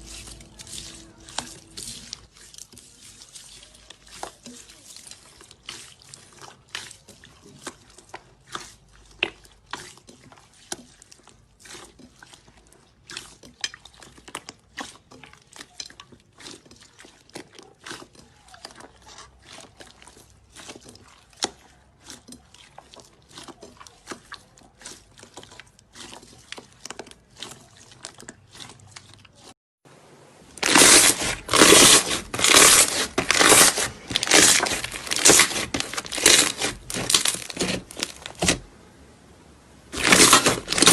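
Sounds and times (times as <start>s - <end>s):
loud dense crackling and crunching: 30.6s - 38.6s, 39.9s - 40.9s.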